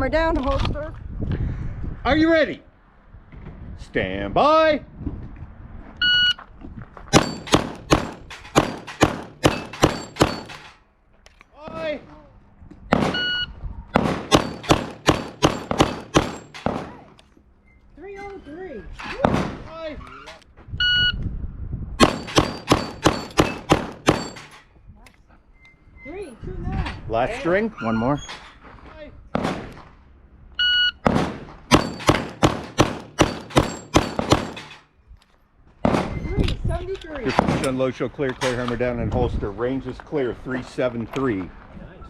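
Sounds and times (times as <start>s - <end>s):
pistol shots in rapid succession: 7.2s - 10.6s, 14.0s - 17.0s, 22.0s - 24.5s, 31.0s - 34.7s.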